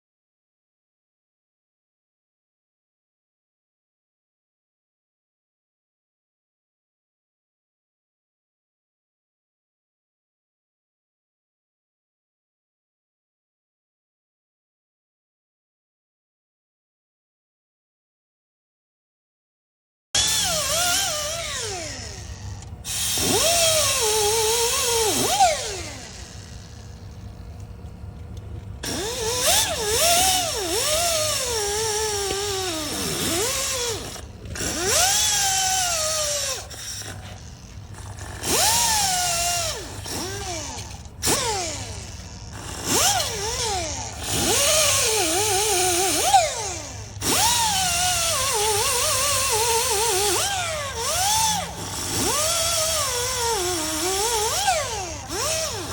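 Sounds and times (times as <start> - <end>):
electric power tool motor whine: 20.2 - 55.9.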